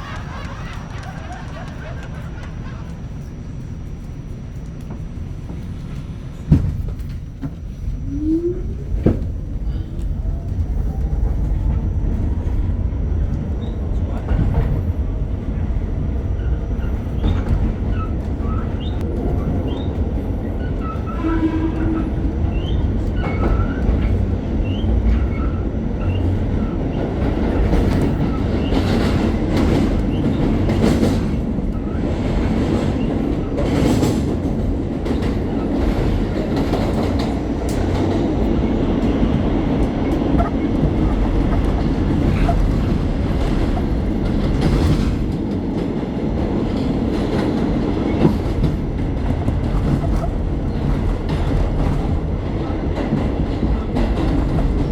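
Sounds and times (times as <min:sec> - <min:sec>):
subway train rumbling: 0:00.0 - 0:54.9
wheel squeals: 0:20.5 - 0:27.1.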